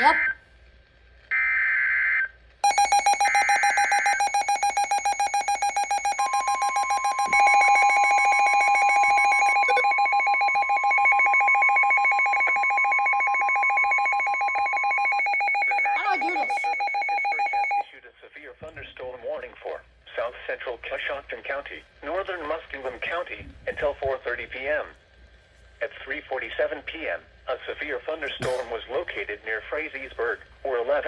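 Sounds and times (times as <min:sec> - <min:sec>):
alarm beeping rapidly: 0:02.6 - 0:17.8
steady warning alarm tone: 0:02.6 - 0:17.9.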